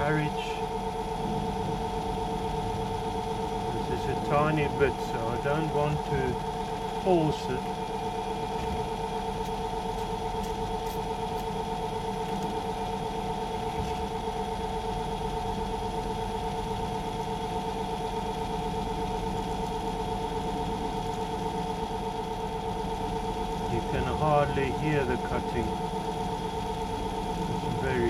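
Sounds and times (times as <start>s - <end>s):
lathe humming: 0.0s - 14.9s, 16.5s - 28.0s.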